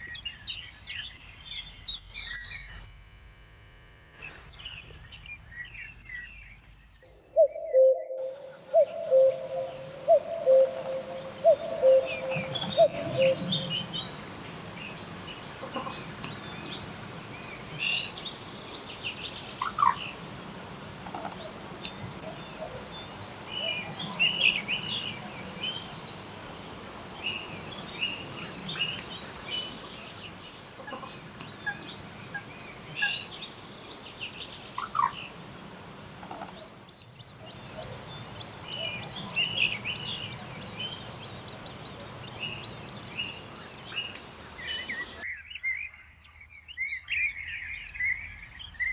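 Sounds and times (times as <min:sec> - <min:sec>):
birds chirping and trilling: 0:05.5 - 0:45.9
low rapid bird call: 0:07.4 - 0:18.8
low background hiss: 0:07.4 - 0:45.2.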